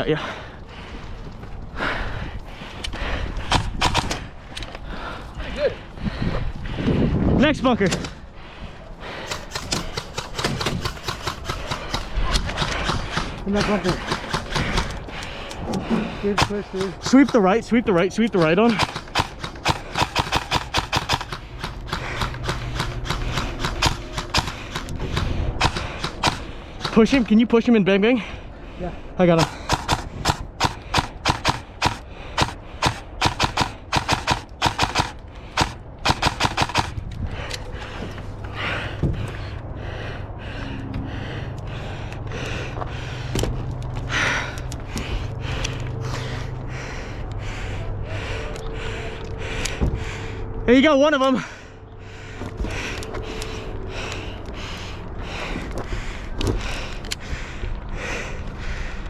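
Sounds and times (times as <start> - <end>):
heavy breathing: 0.0 - 7.4, 8.1 - 59.0
wind noise: 0.0 - 17.8, 18.4 - 27.4, 28.2 - 50.6
sharp clicks: 2.8 - 4.8, 9.3 - 15.8, 18.3 - 27.2, 29.4 - 37.6
airsoft rifle shots: 3.5 - 4.2, 9.3 - 15.0, 18.3 - 27.2, 29.3 - 37.0.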